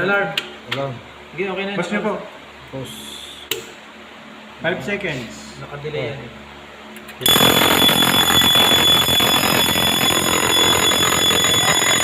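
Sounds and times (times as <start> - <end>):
fire alarm bell ringing: 7.2 - 12.0.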